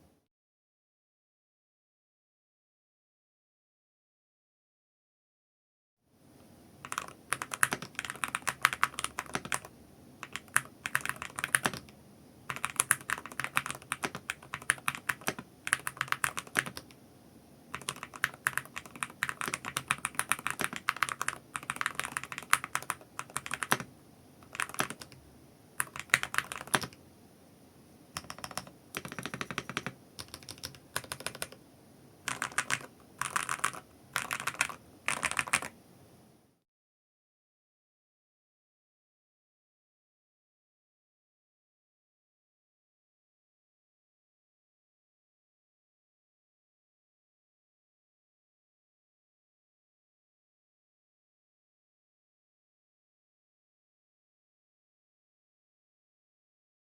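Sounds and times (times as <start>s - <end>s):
keyboard typing clatter: 6.8s - 11.9s, 12.5s - 16.9s, 17.7s - 25.2s, 25.8s - 27.0s, 28.2s - 31.6s, 32.3s - 35.8s.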